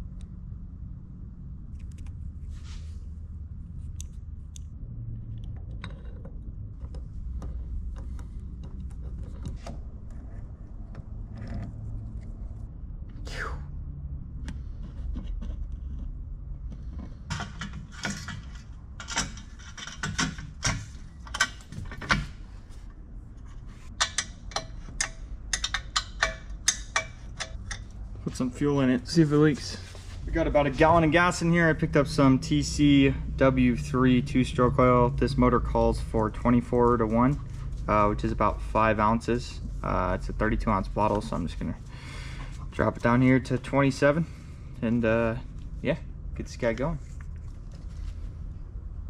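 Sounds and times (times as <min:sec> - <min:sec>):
low rumble: 0:00.0 - 0:19.6
metal parts and tools rattling: 0:14.6 - 0:28.5.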